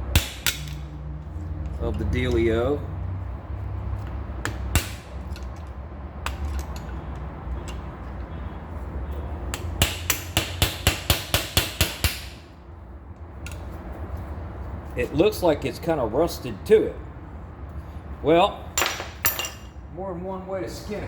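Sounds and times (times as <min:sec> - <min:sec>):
hammer striking metal: 0:00.0 - 0:00.8, 0:04.4 - 0:05.1, 0:09.5 - 0:12.4.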